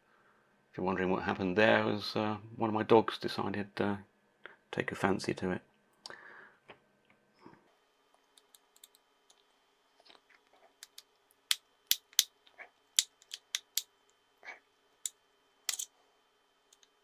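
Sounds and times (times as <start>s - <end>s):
screwdriver and screws clicking: 13.0s - 13.8s, 15.0s - 15.9s.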